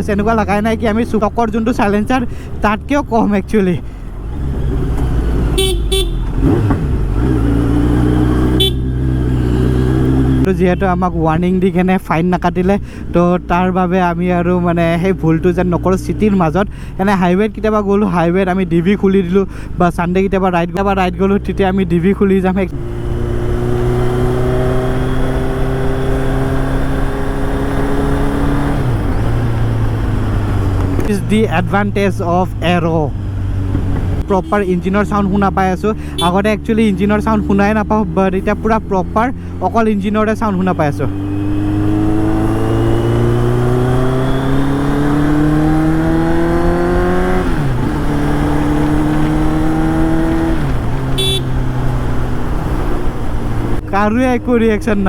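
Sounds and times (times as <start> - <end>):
wind and road noise: 0.0 - 55.0
motorcycle engine running: 3.9 - 10.5, 22.7 - 55.0.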